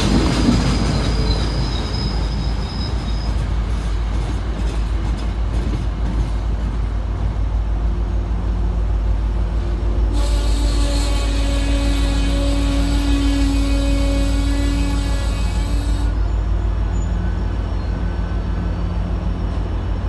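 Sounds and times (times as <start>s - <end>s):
train rumbling: 0.0s - 20.0s
high wheel squeal: 0.6s - 3.6s, 10.2s - 18.8s.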